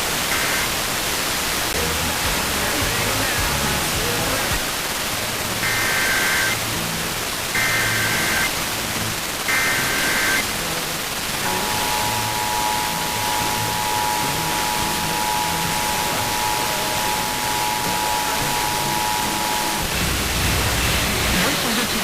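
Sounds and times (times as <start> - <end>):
static hiss: 0.0 - 22.0
warbling digital data bursts: 0.0 - 22.0
two-tone attention signal: 5.6 - 6.6, 7.6 - 8.5, 9.5 - 10.4, 11.4 - 20.2.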